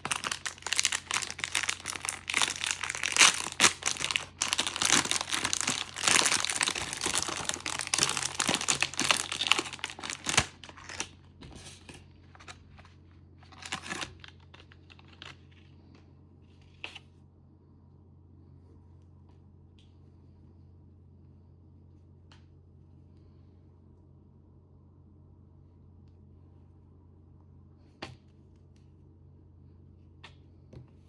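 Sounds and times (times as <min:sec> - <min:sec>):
plastic packaging crinkling: 0:00.0 - 0:11.2, 0:11.8 - 0:15.5.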